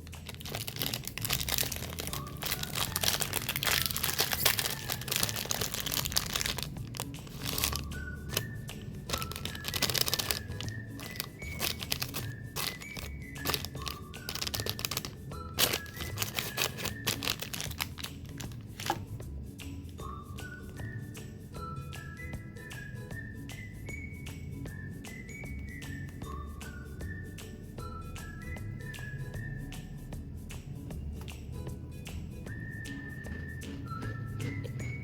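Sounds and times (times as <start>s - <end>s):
plastic wrapper crinkling and tearing: 0.0s - 8.5s, 9.1s - 19.0s
background music with plinking melody: 0.0s - 35.0s.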